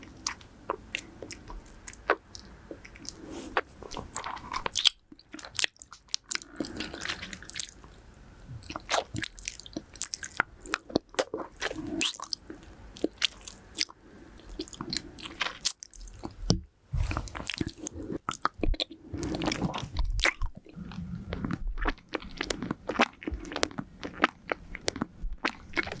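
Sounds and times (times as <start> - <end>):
hard candy crunching on teeth: 0.2 - 7.8, 8.6 - 16.4, 17.2 - 26.0
wet mouth sounds: 0.2 - 7.8, 17.0 - 26.0
nose breath puffs: 3.1 - 3.8.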